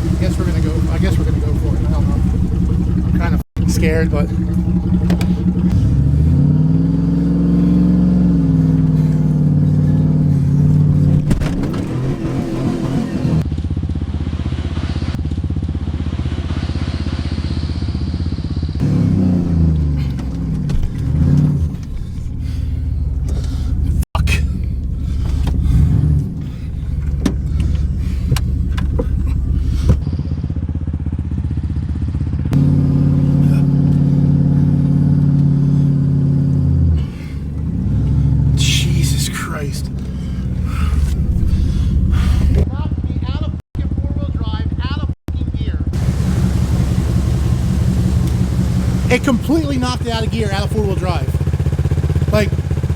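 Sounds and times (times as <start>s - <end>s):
truck engine revving: 0.0s - 13.5s, 16.2s - 30.0s, 32.5s - 42.7s, 46.0s - 52.9s
suspension and body knocks: 4.3s - 5.8s, 10.6s - 12.6s, 19.8s - 22.4s, 23.1s - 30.0s.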